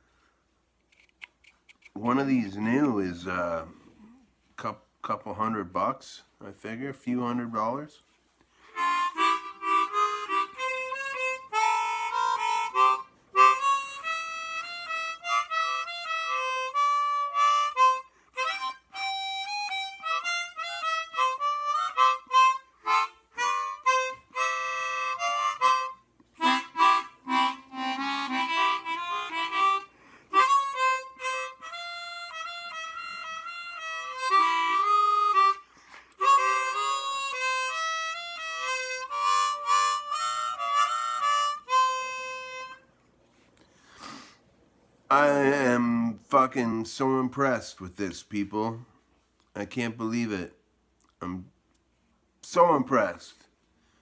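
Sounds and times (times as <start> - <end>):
chromatic harmonica playing: 8.6 - 43.0.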